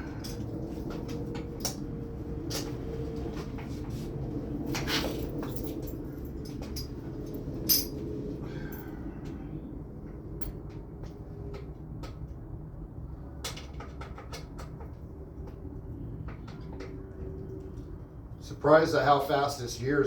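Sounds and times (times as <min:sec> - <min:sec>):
metal parts and tools clinking: 0:05.3 - 0:08.0.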